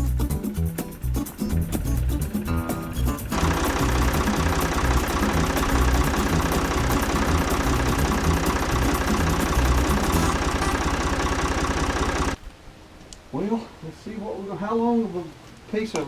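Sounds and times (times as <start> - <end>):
engine idling: 0.0 - 12.4.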